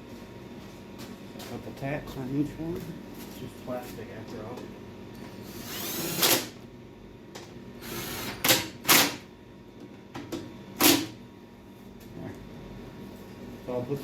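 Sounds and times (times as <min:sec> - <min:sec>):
power driver whirring in short bursts: 0:05.5 - 0:06.6, 0:07.8 - 0:09.2.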